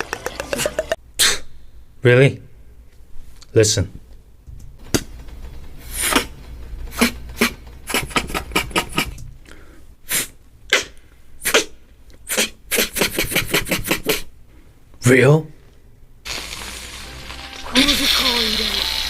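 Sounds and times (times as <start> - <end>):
beatboxing bursts and hisses: 0.1 - 1.6, 5.8 - 9.3, 10.0 - 14.3.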